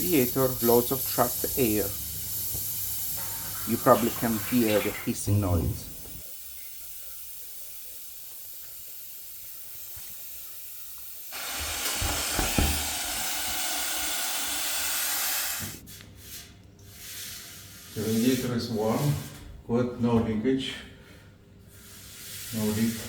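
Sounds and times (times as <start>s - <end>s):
air hissing from radiator valve: 0.0s - 15.8s, 21.7s - 23.0s.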